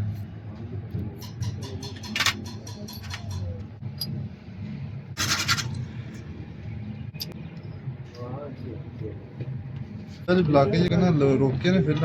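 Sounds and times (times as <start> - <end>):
small metal parts clicking: 1.3 - 4.1, 5.2 - 5.8
scratchy scrapes: 5.2 - 5.8.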